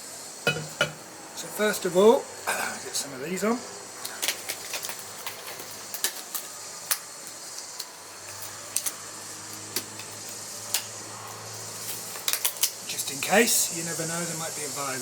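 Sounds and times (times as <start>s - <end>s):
low steady hum: 0.5s - 1.2s.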